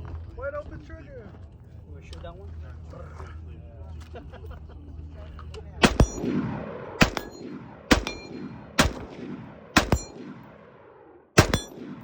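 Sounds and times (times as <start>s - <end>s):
gunshot echo: 5.8s - 12.0s
gunshots with metallic ring: 5.8s - 12.0s.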